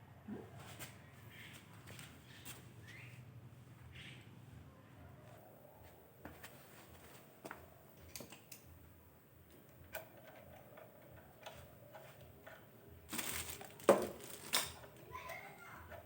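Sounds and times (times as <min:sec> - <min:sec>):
tools and metal parts clicking: 0:07.9 - 0:08.8, 0:09.5 - 0:16.0.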